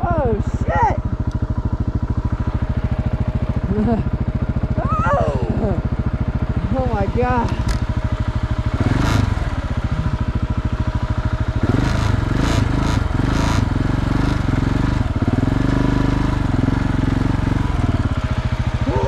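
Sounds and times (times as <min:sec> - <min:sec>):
motorcycle engine chugging: 0:00.0 - 0:19.0.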